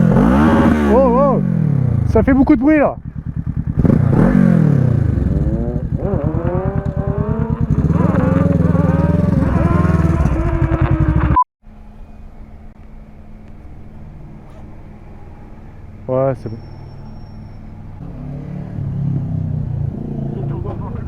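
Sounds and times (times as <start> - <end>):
motorcycle engine revving: 0.0 - 11.4, 16.8 - 21.0
faint steady engine hum: 11.6 - 21.0.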